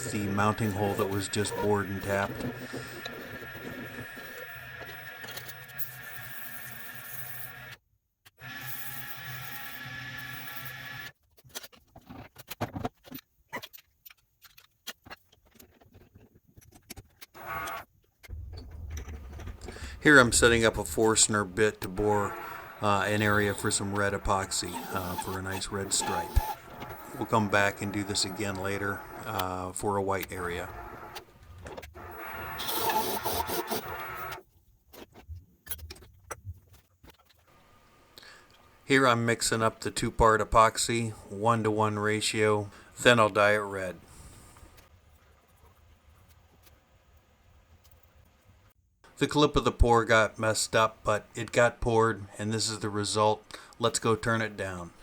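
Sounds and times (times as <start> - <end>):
lathe motor humming: 0.0 - 5.4, 19.6 - 31.4, 32.0 - 34.4
drill bit boring wood: 0.0 - 7.8, 8.4 - 11.1, 17.4 - 17.8, 19.7 - 31.3, 32.0 - 34.4.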